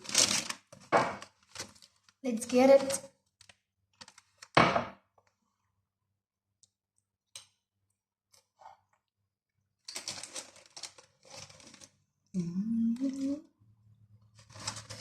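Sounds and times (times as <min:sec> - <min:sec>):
crunching and chewing of fried chicken: 0:09.9 - 0:12.1
person humming mmm: 0:12.4 - 0:13.5.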